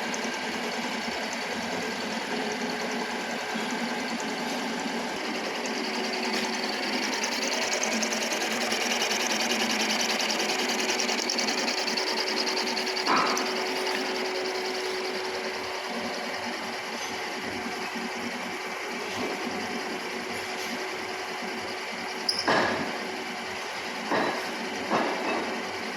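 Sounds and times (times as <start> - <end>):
milling machine rattling: 0.0 - 17.0.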